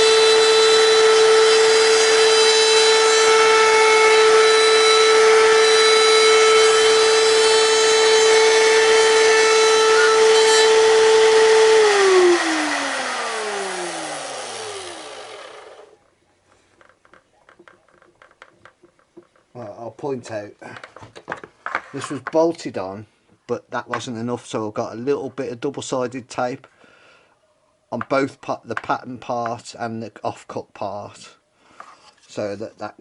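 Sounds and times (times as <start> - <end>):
router motor whining: 0.0 - 16.0.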